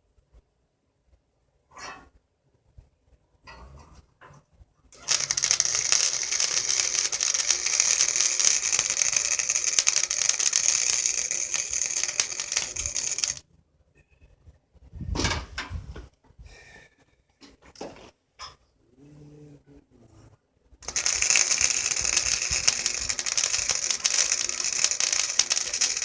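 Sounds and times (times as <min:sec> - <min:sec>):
electric arc welder crackling: 0:05.0 - 0:13.4, 0:20.8 - 0:26.0.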